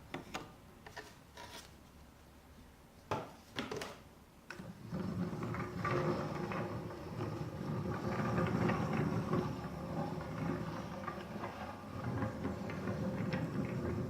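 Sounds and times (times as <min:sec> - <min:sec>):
wheels clicking and clattering: 0:04.7 - 0:14.0.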